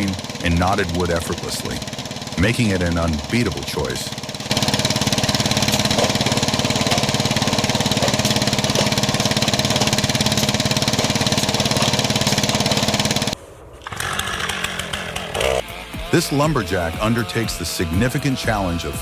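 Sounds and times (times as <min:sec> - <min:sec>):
log splitter engine running: 0:00.0 - 0:19.0.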